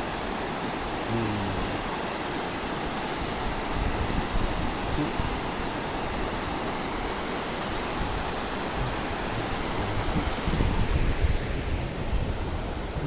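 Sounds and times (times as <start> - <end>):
mountain stream rushing: 0.0 - 13.0.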